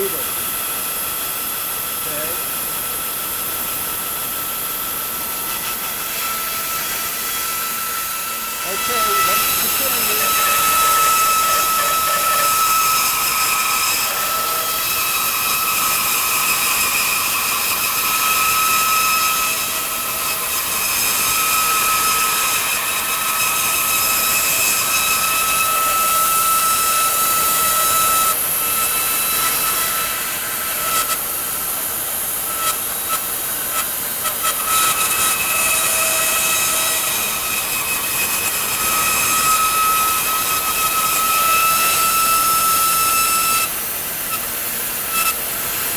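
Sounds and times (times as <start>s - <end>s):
bandsaw cutting wood: 0.0s - 0.5s, 1.9s - 2.8s, 4.2s - 45.9s.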